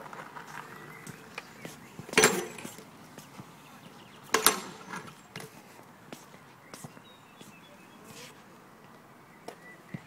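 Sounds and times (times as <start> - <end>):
bike hitting the ground: 2.1 - 2.8, 4.3 - 5.5.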